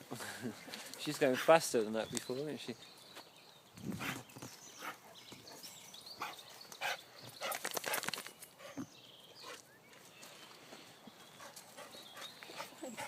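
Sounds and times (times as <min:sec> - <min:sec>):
sharp clicks and rustles: 0:07.3 - 0:08.5
dogs playing: 0:11.1 - 0:13.0.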